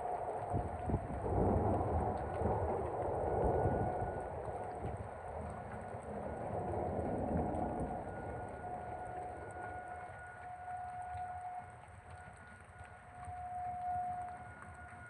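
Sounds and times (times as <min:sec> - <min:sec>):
strong wind gusting: 0:00.0 - 0:10.6
faint tornado siren: 0:00.0 - 0:15.0
heavy rain: 0:00.0 - 0:15.0
low rumble: 0:00.2 - 0:12.5.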